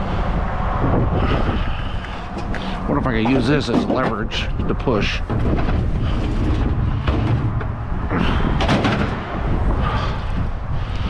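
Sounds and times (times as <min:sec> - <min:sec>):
wind buffeting microphone: 0:00.0 - 0:11.0
knocking and scraping: 0:02.3 - 0:10.0.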